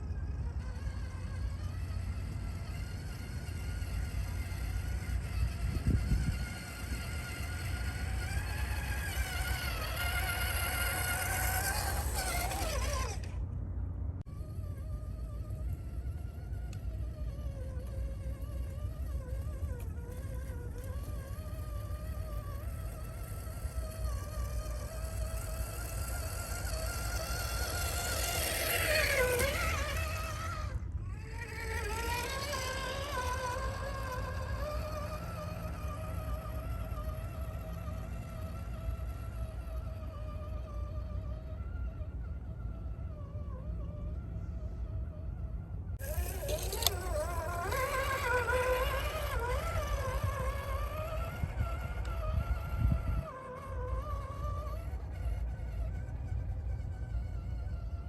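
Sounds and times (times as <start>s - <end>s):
electric motor and gearbox whining: 0.0s - 58.0s.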